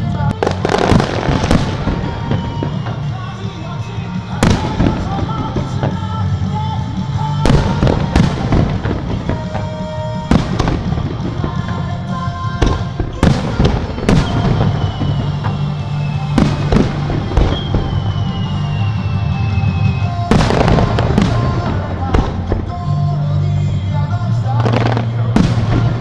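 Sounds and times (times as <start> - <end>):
continuous rumble: 0.0 - 26.0
firework bangs: 0.0 - 26.0
high falling whistle: 13.9 - 22.1.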